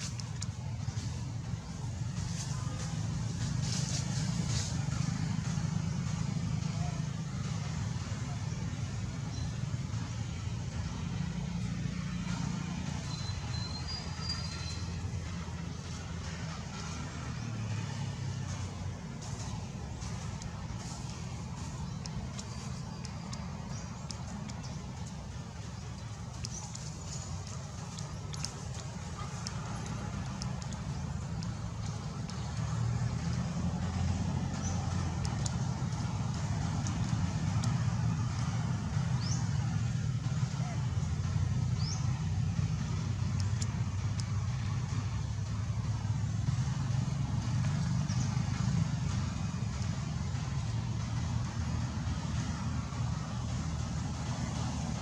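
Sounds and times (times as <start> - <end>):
low engine rumble: 0.0 - 55.0
faint clicks: 19.4 - 38.6, 42.7 - 46.0.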